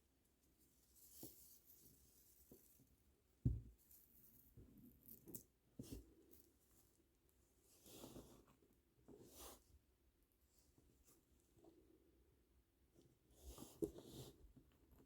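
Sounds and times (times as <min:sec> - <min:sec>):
soft knock: 0:03.4 - 0:03.8.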